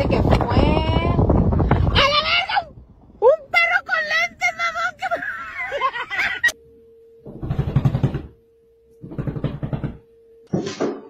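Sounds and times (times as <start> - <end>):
faint steady tone: 2.7 - 11.0.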